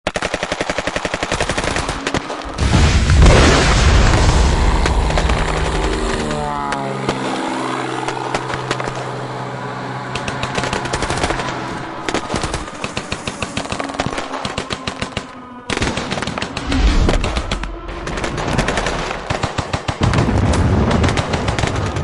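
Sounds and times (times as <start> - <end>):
machine-gun fire: 0.1 - 6.4, 10.1 - 22.0
steady low drone: 1.8 - 20.8
falling tone: 2.6 - 15.8.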